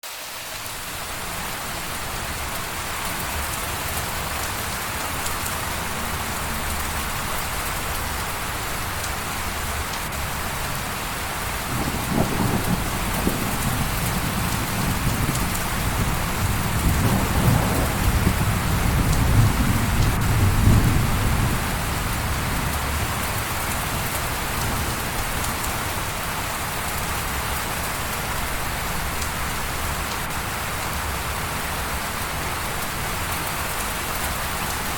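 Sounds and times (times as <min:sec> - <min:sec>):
rain pattering: 0:00.0 - 0:34.9
rolling thunder rumble: 0:11.7 - 0:25.7.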